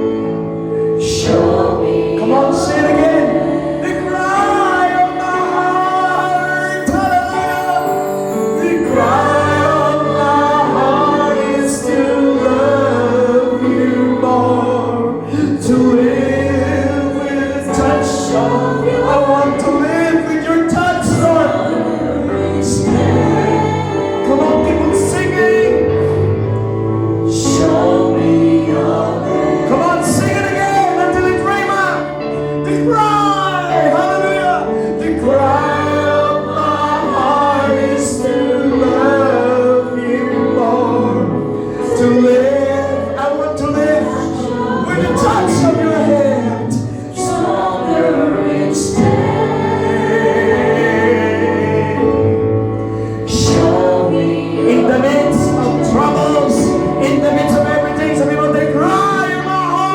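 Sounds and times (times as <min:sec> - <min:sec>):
held instrumental chords: 0:00.0 - 0:59.9
voices singing worship song: 0:00.0 - 0:59.9.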